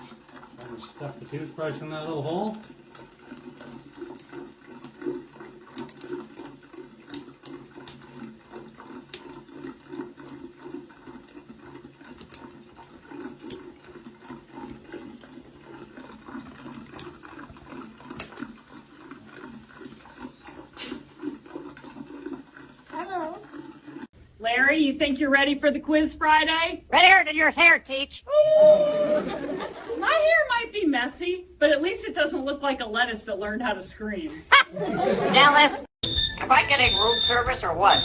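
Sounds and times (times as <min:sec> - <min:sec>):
water running and splashing: 0:00.0 - 0:24.1.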